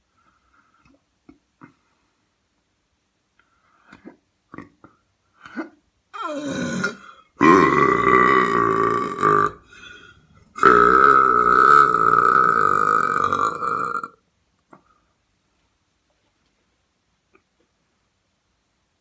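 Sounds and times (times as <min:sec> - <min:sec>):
person belching: 0:04.5 - 0:04.9, 0:06.2 - 0:14.2.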